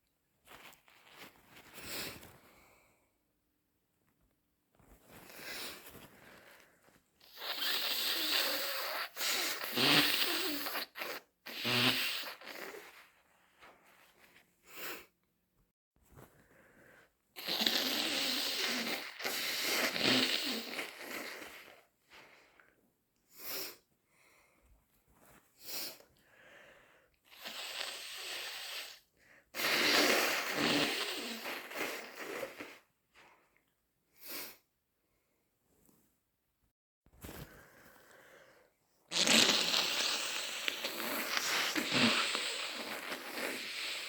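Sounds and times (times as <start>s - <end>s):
short nasal bursts: 7.2s - 13.0s, 17.4s - 21.8s, 27.3s - 32.9s, 39.1s - 44.0s
person blowing nose: 7.2s - 13.2s, 17.4s - 22.4s, 27.3s - 33.3s, 39.1s - 44.0s.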